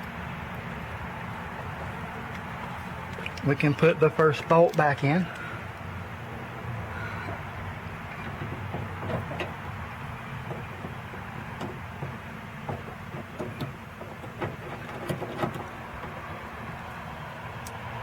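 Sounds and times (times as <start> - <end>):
light clicks of car door parts: 8.1 - 17.0, 17.6 - 17.9.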